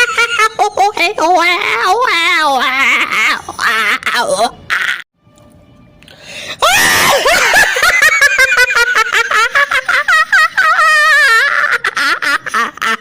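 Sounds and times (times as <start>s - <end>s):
shrill cackling laugh: 0.0s - 1.0s, 6.8s - 13.0s.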